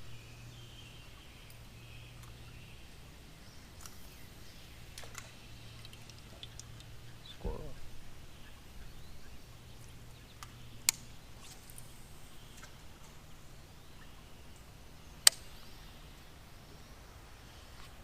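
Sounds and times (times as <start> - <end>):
low steady hum: 0.0 - 18.0
sharp clicks: 15.2 - 15.5.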